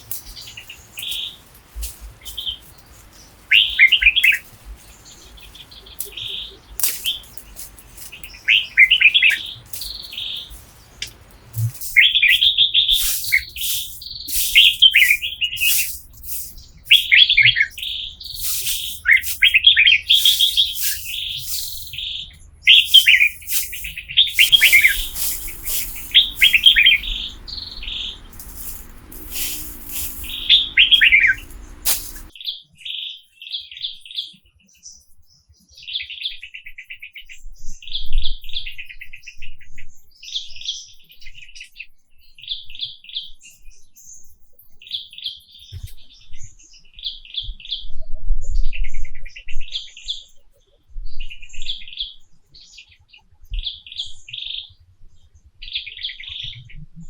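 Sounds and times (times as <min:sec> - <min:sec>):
birds chirping: 0:00.0 - 0:32.3
buzzy trilled chirps: 0:13.0 - 0:17.2, 0:17.8 - 0:22.0, 0:22.7 - 0:32.3
low steady hum: 0:23.6 - 0:32.3.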